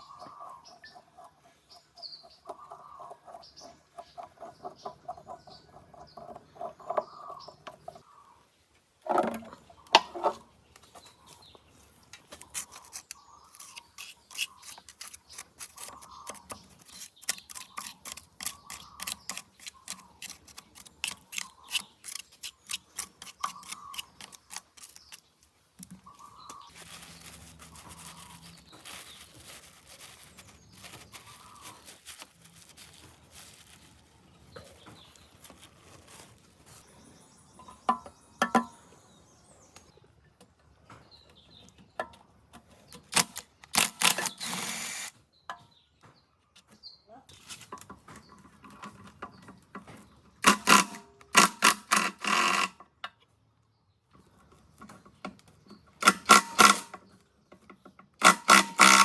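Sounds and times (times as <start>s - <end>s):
birds calling: 0.0s - 47.1s
quick brushing strokes: 26.6s - 34.1s.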